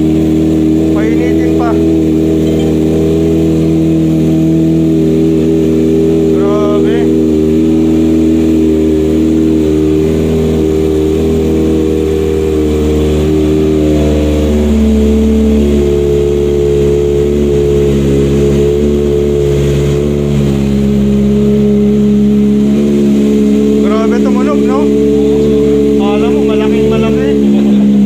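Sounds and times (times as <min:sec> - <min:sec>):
motorcycle engine idling: 0:00.0 - 0:28.0.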